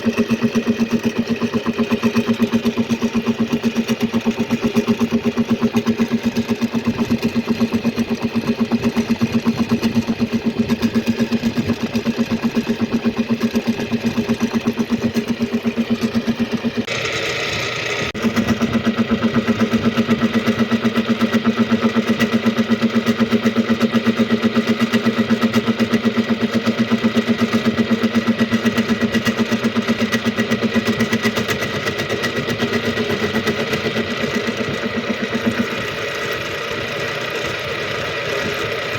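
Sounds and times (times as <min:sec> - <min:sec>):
gear cutting machine pulsing: 0:00.0 - 0:38.9.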